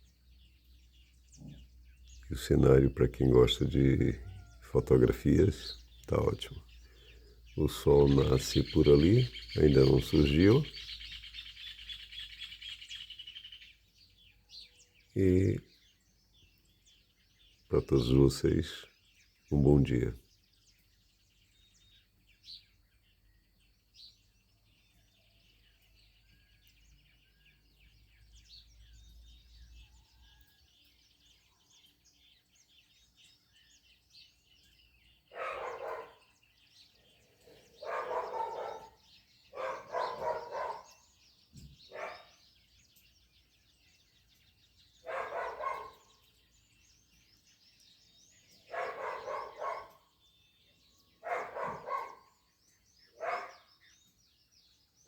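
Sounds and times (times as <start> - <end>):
faint birdsong: 0.0 - 55.0
dog barking: 35.3 - 36.4, 37.8 - 41.0, 41.9 - 42.4, 45.0 - 46.1, 48.6 - 50.0, 51.2 - 52.3, 53.2 - 53.7.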